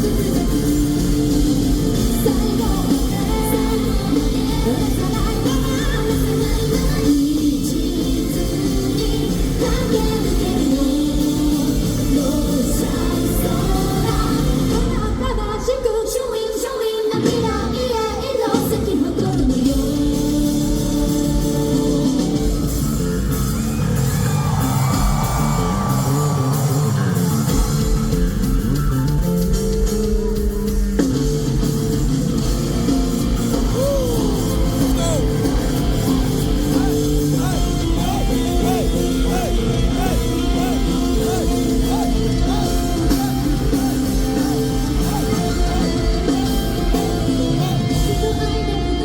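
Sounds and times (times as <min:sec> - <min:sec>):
live rock band: 0:00.0 - 0:49.0
person singing: 0:33.5 - 0:49.0.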